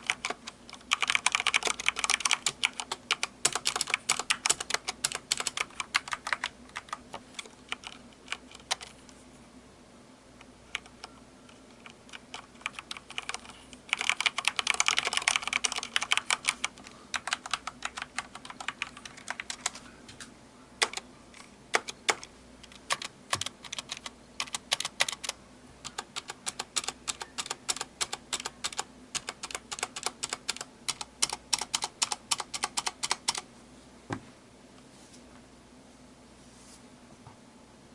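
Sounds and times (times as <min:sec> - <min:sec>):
typing on mechanical keyboard: 0:00.0 - 0:09.0, 0:10.7 - 0:19.8, 0:20.8 - 0:21.0, 0:21.7 - 0:33.4.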